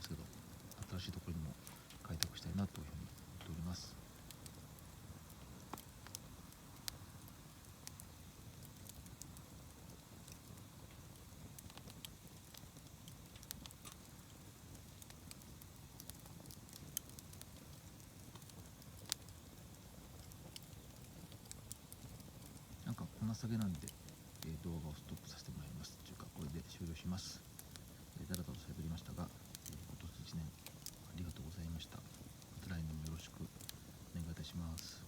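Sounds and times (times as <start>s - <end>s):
faint low rumble: 0.0s - 4.9s, 21.7s - 35.0s
campfire crackles and pops: 0.0s - 35.0s.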